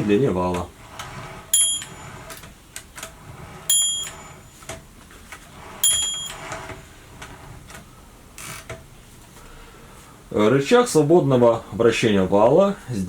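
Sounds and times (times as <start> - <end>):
typewriter margin bell ringing: 1.5 - 2.2, 3.7 - 4.6, 5.8 - 6.6.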